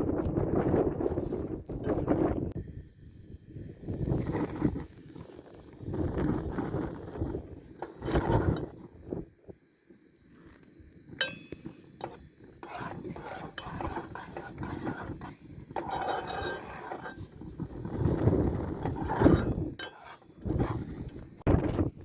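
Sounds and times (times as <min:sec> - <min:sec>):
metal cookware clinking: 0:11.2 - 0:11.6, 0:19.8 - 0:20.2
scraping and knocking of utensils: 0:11.2 - 0:17.4, 0:18.7 - 0:21.2.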